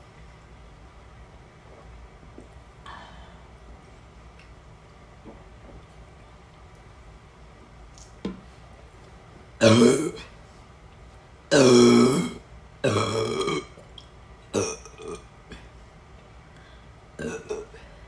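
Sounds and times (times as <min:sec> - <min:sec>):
loud deep burps: 0:09.6 - 0:10.3, 0:11.5 - 0:13.8, 0:14.5 - 0:15.2, 0:17.2 - 0:17.8.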